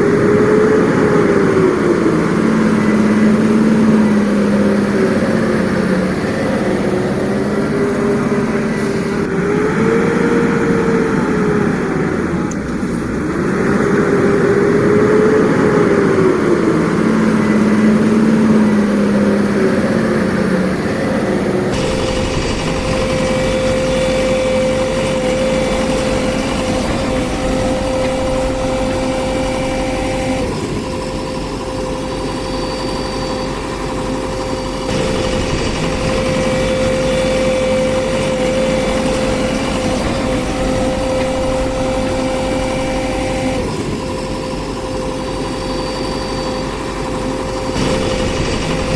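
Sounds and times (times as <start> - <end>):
toy vehicle motor running: 21.7 - 48.9.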